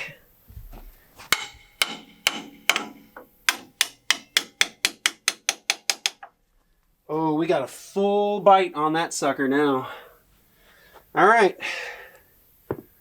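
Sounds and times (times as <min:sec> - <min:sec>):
hammer clanging on metal: 0:01.3 - 0:06.3.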